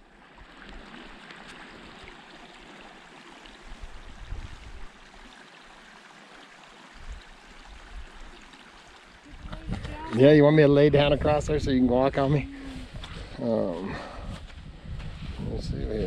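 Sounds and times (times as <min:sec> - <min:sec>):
stream running: 0:00.0 - 0:16.0
footfalls and low bumps: 0:12.8 - 0:16.0.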